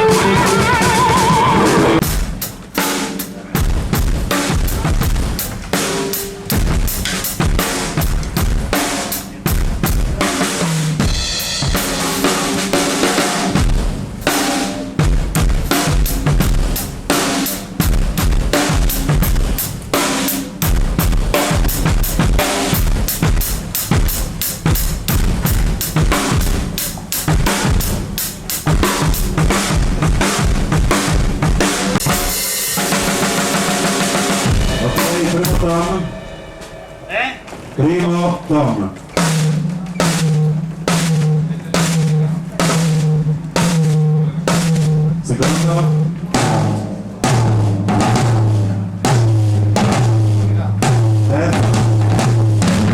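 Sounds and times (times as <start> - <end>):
held pitched tone: 0.0 - 2.0
drum kit playing: 0.0 - 52.9
low drum ringing: 9.5 - 52.9.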